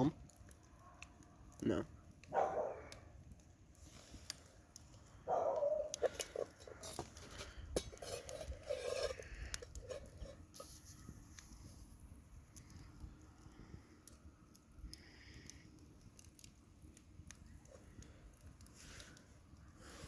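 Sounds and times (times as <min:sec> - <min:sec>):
metal pan clicking and rattling: 0:06.0 - 0:10.4.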